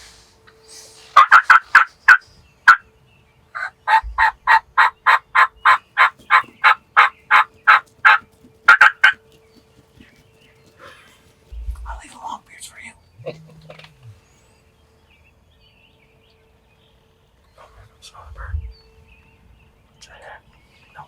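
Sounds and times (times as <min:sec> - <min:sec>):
wild turkey yelping: 0:01.2 - 0:02.8, 0:03.6 - 0:11.4, 0:13.2 - 0:14.4.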